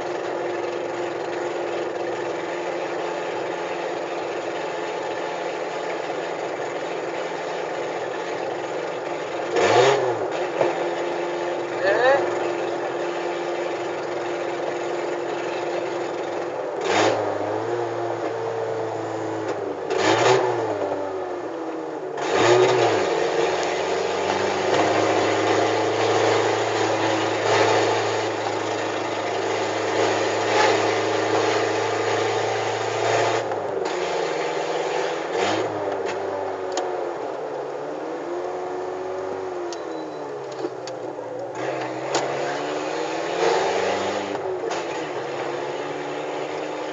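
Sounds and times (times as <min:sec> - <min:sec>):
car engine revving through gears: 0:00.0 - 0:46.9.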